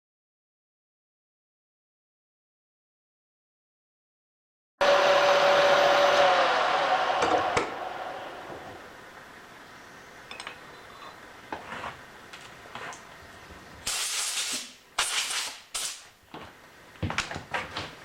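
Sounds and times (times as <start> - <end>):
air blow gun hissing: 13.8 - 16.1.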